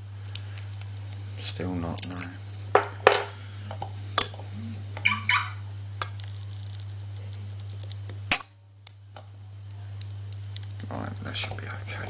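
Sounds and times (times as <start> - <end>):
low electrical hum: 0.0 - 12.0
high-pitched cry: 4.6 - 5.6.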